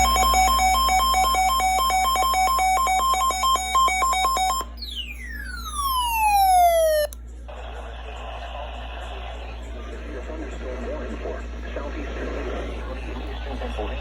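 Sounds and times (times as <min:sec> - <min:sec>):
long falling pitch slide: 0:00.0 - 0:03.4
two-pitch electronic beeps: 0:00.0 - 0:07.2
low electrical hum: 0:00.0 - 0:07.5.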